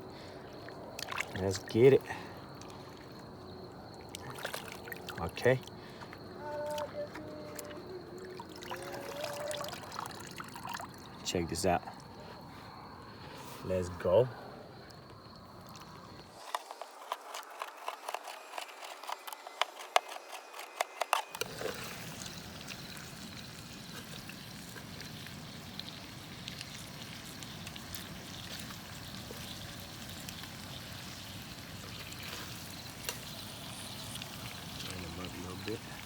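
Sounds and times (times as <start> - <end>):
pouring trickling water: 8.2 - 11.3, 21.4 - 36.0.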